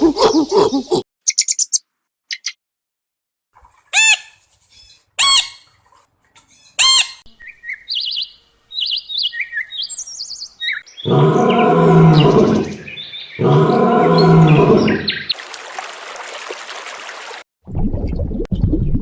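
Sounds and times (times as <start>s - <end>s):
songbirds chirping: 4.6s - 15.4s
loud low animal calls: 11.0s - 15.3s.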